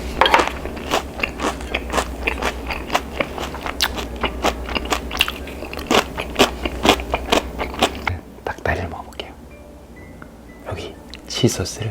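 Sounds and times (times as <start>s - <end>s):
chewing crispy fried chicken: 0.2s - 8.2s.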